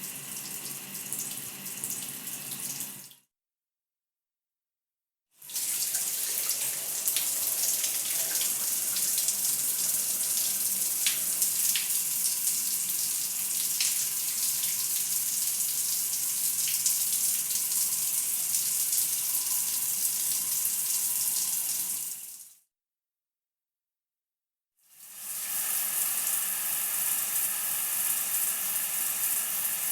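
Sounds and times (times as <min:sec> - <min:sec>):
shower spray running: 0:05.4 - 0:15.2, 0:25.0 - 0:29.9.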